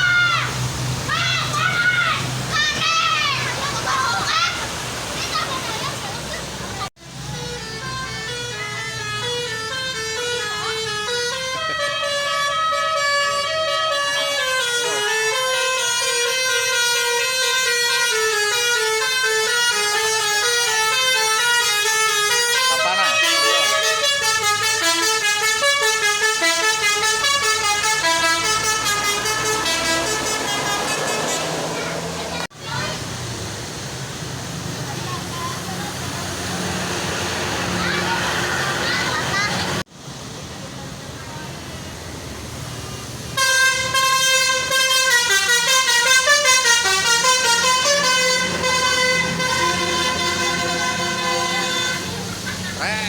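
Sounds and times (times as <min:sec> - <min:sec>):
multi-tone melody horn: 0:07.3 - 0:32.2, 0:43.4 - 0:53.0.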